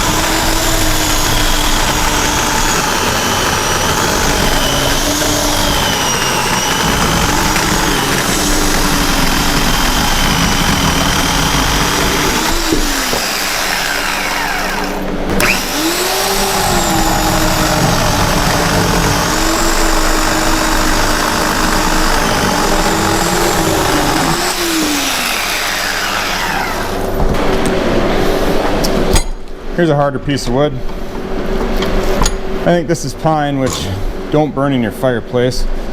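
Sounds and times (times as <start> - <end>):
electric chainsaw cutting wood: 0.0 - 27.2.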